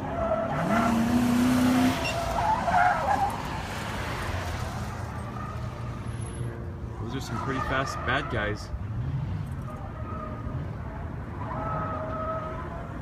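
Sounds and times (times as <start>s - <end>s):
car engine revving: 0.0s - 6.3s.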